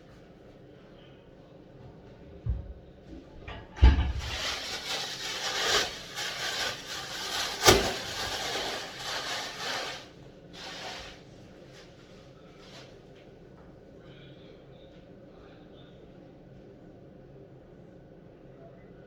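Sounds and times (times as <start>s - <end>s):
rasping rub and scrape: 4.2s - 11.2s.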